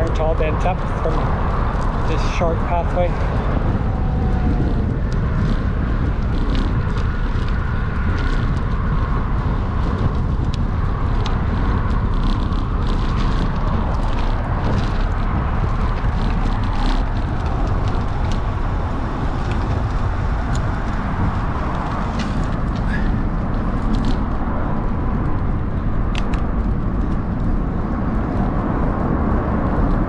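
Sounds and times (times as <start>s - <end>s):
bike clicks and rattles: 0.0s - 30.0s
bike rolling on rough pavement: 0.0s - 30.0s
wind buffeting microphone: 0.0s - 30.0s.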